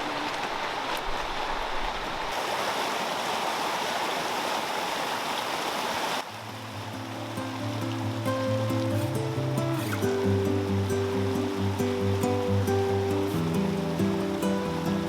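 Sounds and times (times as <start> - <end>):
creek flowing over rocks: 0.0 - 15.0
music: 6.5 - 15.0.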